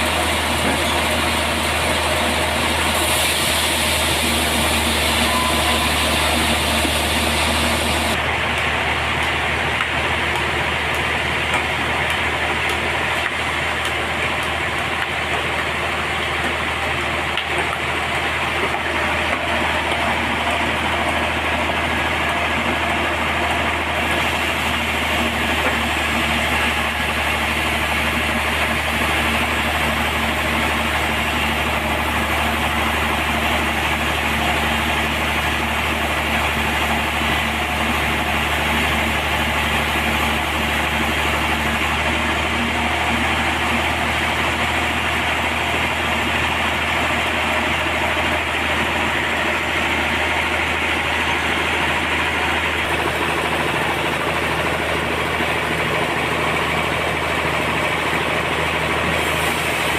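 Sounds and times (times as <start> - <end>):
sawmill machinery drone: 0.0 - 59.9.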